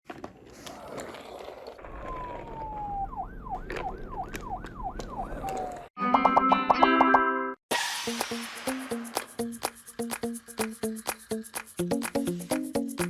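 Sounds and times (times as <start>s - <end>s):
police siren wailing: 1.9s - 5.9s.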